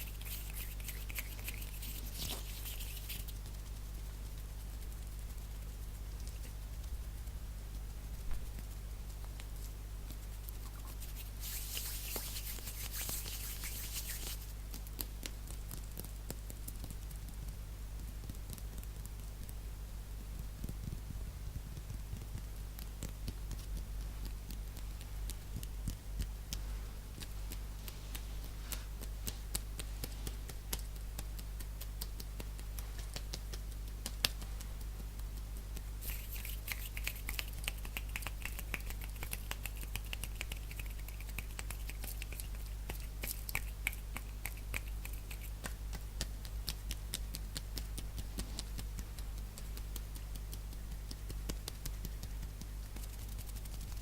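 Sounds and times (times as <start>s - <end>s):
hands rubbing: 0.0s - 6.9s, 10.1s - 14.6s, 26.5s - 54.0s.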